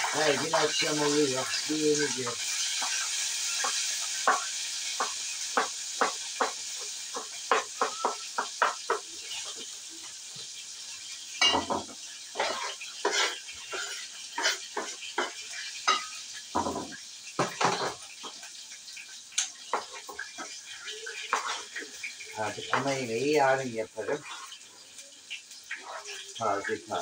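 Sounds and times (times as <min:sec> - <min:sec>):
food sizzling in a frying pan: 0:00.0 - 0:27.0.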